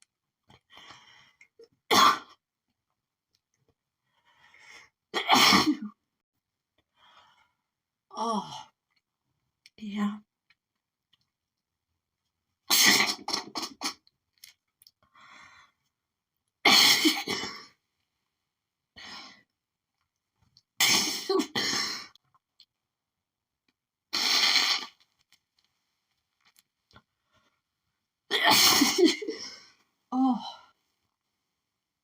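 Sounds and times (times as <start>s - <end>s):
woman sneezing and coughing: 1.9s - 2.4s, 5.2s - 6.0s, 12.7s - 14.0s, 16.6s - 17.7s, 20.8s - 22.1s, 28.3s - 29.6s
woman breathing: 4.0s - 5.0s, 15.1s - 15.9s.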